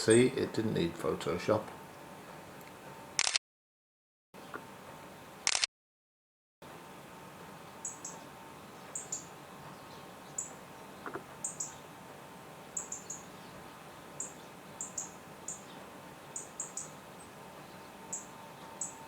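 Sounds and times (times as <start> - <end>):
small birds chirping: 7.6 - 19.0.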